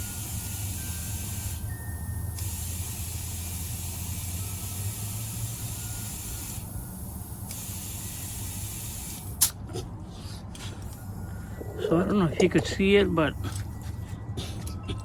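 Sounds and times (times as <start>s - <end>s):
air hissing into tire: 0.0s - 9.6s
compressor humming: 0.0s - 9.9s, 10.6s - 15.0s.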